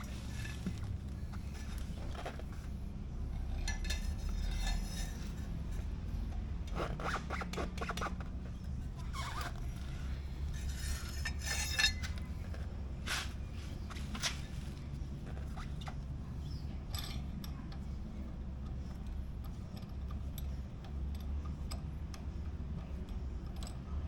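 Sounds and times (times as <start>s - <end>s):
metal scraping and rubbing: 0.0s - 16.0s
steady low hum: 0.0s - 24.0s.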